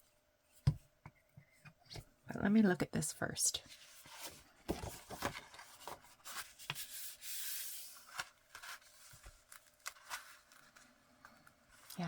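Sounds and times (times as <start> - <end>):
paper and card rustling: 3.7 - 12.0.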